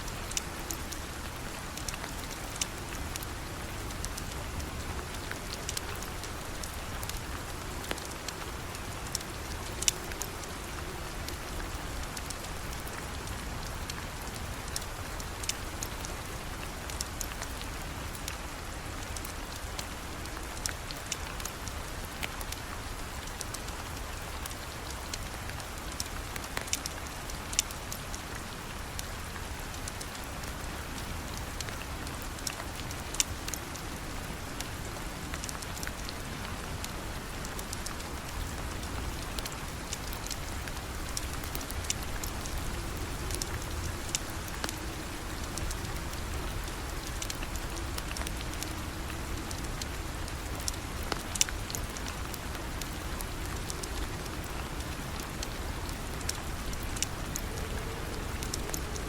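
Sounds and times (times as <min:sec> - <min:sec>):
steady rain falling: 0:00.0 - 0:59.0
sharp ticks and pops: 0:37.5 - 0:59.0.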